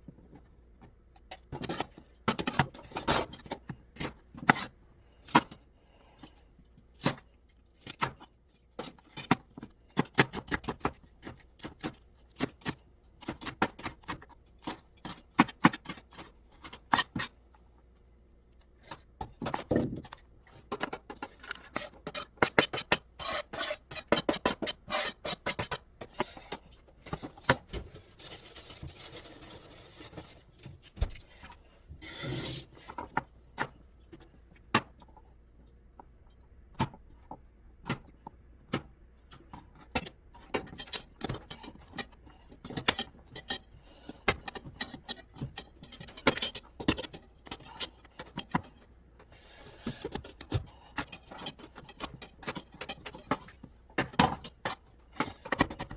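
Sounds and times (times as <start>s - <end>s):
knife scraping board: 21.5s - 27.5s, 31.3s - 33.1s, 49.3s - 53.5s.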